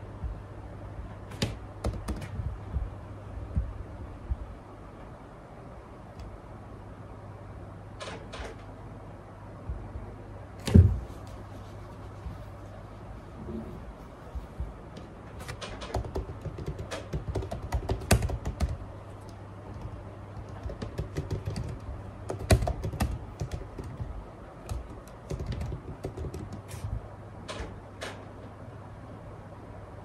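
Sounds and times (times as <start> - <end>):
low hum: 0.0 - 7.9, 8.7 - 15.4
rapid light clicks and taps: 1.3 - 2.9, 14.4 - 28.2.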